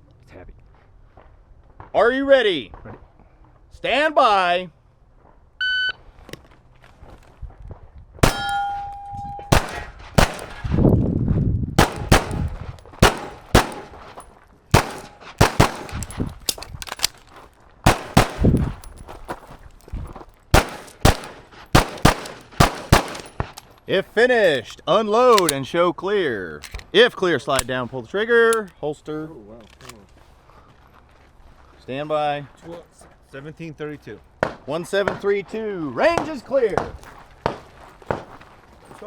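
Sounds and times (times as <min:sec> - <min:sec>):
shot timer beep: 0:08.2 - 0:09.5
pistol shots: 0:08.2 - 0:10.8, 0:11.8 - 0:17.2, 0:17.9 - 0:18.9, 0:20.5 - 0:23.7, 0:36.0 - 0:38.4
ringing tone: 0:08.3 - 0:09.5.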